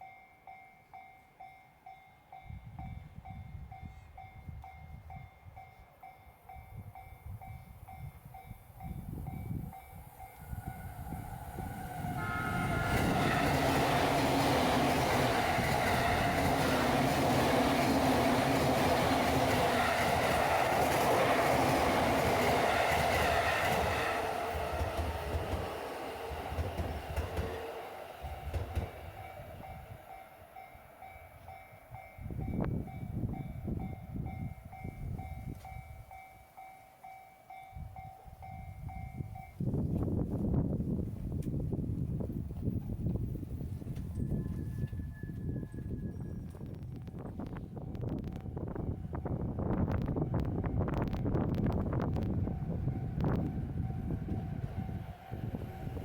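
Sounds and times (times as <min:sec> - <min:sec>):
level-crossing warning bell: 0:00.0 - 0:39.7, 0:44.0 - 0:48.9
train rumble and wheel clatter: 0:02.4 - 0:36.6, 0:37.5 - 0:56.0.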